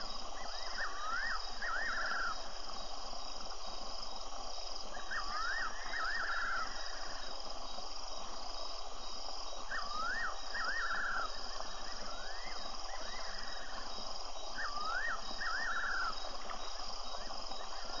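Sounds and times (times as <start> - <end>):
nightjar whistled song: 0.0 - 3.0, 4.9 - 7.8, 9.0 - 18.0
crickets chirping: 0.0 - 18.0.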